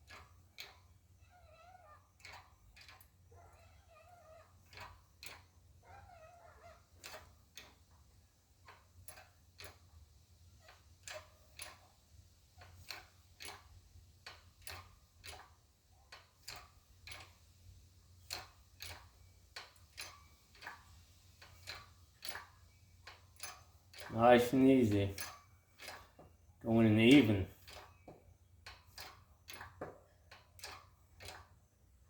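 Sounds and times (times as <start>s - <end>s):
faint sharp clicks of hydraulic press: 2.2s - 3.2s, 6.5s - 8.0s, 8.6s - 12.0s, 12.6s - 17.4s, 18.2s - 24.1s, 25.2s - 26.4s, 27.6s - 31.6s.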